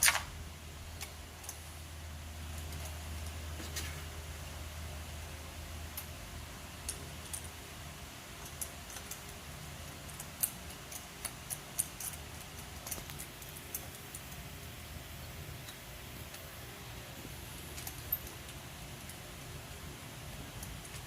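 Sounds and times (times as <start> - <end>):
faint low hum: 0.0 - 21.0
metallic clicks of hand tools: 8.4 - 14.4.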